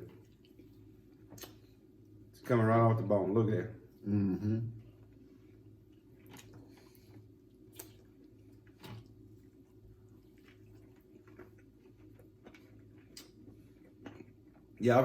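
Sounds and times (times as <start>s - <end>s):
steady low hum: 0.0s - 15.0s
person eating clicks and smacks: 0.1s - 1.7s, 7.7s - 9.2s, 10.4s - 14.8s.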